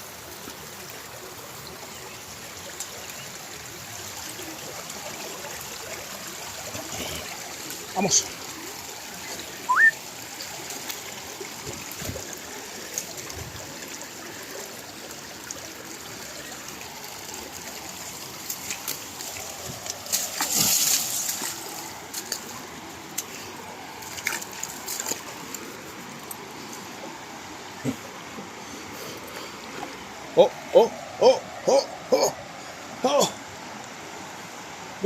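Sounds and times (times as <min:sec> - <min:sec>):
river current running: 0:00.0 - 0:35.0
water splash: 0:18.5 - 0:22.6.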